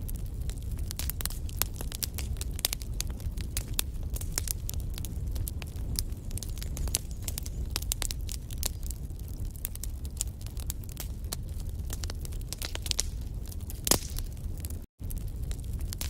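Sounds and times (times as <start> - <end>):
logs crackling and snapping: 0.0 - 16.0
low rumble of flames: 0.0 - 16.0
loud fire pop: 12.5 - 14.4.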